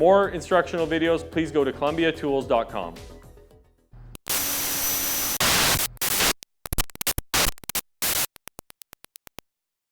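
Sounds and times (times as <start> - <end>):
stuttering white noise bursts: 4.3 - 6.4
short electronic ticks: 6.7 - 9.5.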